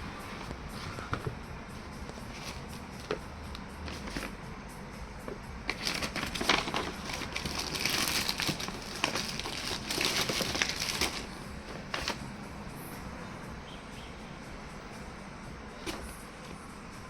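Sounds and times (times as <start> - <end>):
packaging crinkling: 5.7 - 12.3.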